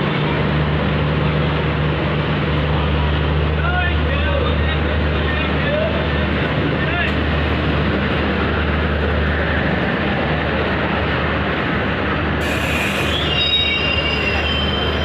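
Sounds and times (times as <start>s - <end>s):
train rumbling on rails: 0.0s - 15.0s
hiss: 12.4s - 13.6s
wheel and brake squeals: 12.6s - 15.0s.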